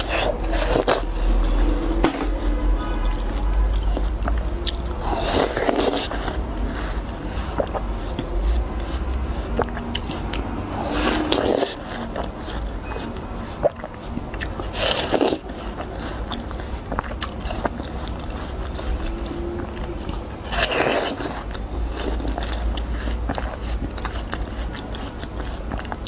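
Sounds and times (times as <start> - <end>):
person biting watermelon: 0.0 - 2.6, 3.7 - 6.7
chewing: 0.0 - 26.0.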